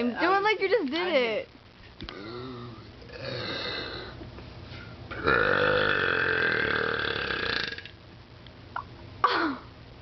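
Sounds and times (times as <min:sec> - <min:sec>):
person belching: 0:02.0 - 0:04.2, 0:05.1 - 0:08.0.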